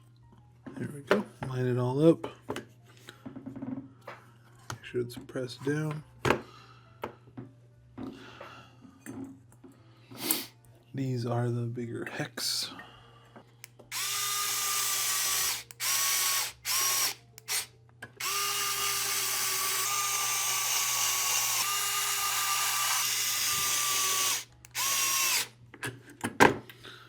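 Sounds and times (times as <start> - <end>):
electric screwdriver motor whine: 13.9 - 25.5.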